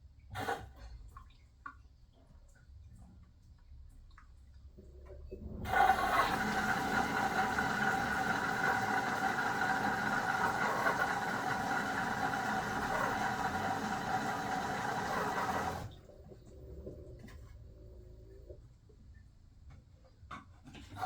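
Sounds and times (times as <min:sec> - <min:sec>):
washing machine humming: 0:04.7 - 0:18.6.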